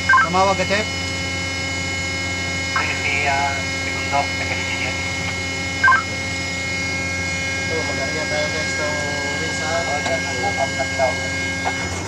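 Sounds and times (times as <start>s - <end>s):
machinery hum: 0.0s - 12.0s
faint muffled speech: 2.8s - 5.1s.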